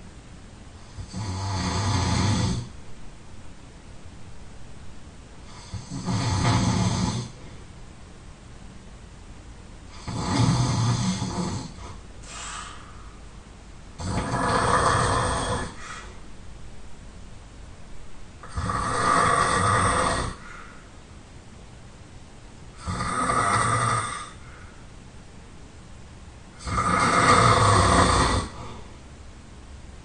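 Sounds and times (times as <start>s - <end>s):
person snoring loudly: 0.9s - 2.7s, 5.4s - 7.4s, 9.9s - 12.6s, 14.0s - 16.1s, 18.4s - 20.7s, 22.7s - 24.7s, 26.6s - 28.9s
quiet breathing: 5.4s - 7.7s, 9.8s - 16.4s, 18.4s - 21.1s, 22.7s - 25.1s, 26.5s - 29.1s.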